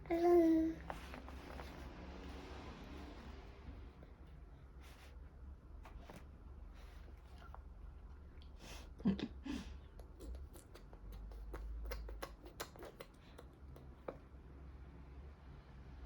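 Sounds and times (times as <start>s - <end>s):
baby vocalizing: 0.0s - 0.9s
baby eating clicks and smacks: 9.9s - 14.4s.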